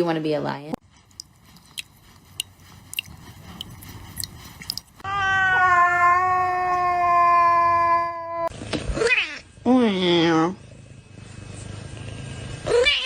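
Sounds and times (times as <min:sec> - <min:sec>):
cat meowing loudly: 0:05.0 - 0:09.4.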